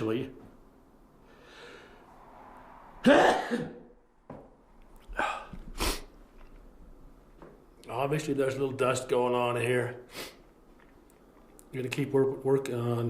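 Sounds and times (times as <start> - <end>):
short sharp breaths: 1.2 - 2.4, 5.1 - 6.2, 10.1 - 10.5
man sneezing loudly: 3.0 - 3.9.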